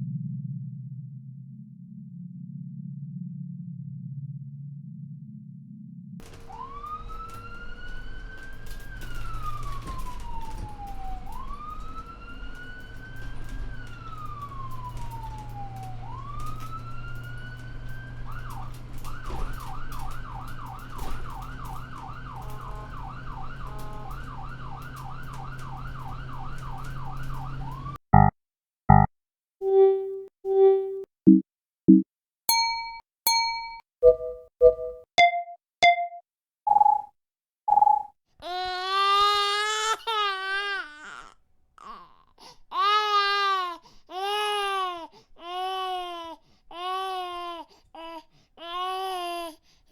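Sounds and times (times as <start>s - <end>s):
ambulance siren wailing and yelping: 6.2s - 28.0s
low engine rumble: 6.2s - 28.0s.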